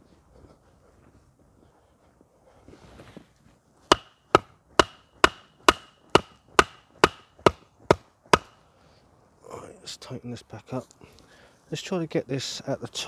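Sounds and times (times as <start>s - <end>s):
hammer striking a stake: 3.9s - 8.6s.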